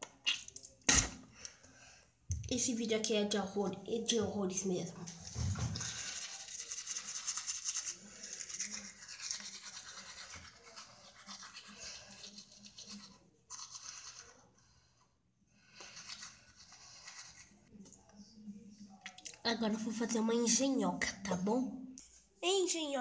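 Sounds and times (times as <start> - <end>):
toothbrush scrubbing teeth: 5.0 - 14.6, 15.7 - 17.7.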